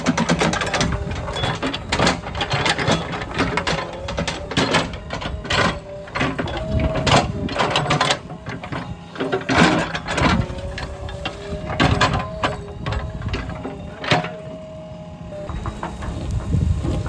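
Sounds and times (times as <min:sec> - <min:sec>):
backhoe loader working: 0:00.0 - 0:17.0
metallic clanks and scrapes: 0:15.5 - 0:17.0.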